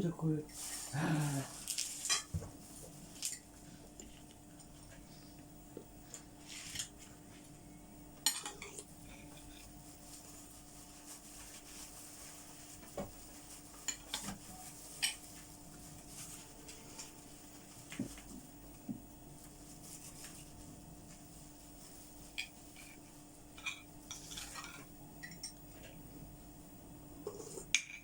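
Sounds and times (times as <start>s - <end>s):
faint steady hum: 0.0s - 28.0s
cutlery and dishes clinking: 8.2s - 9.7s, 23.6s - 25.6s.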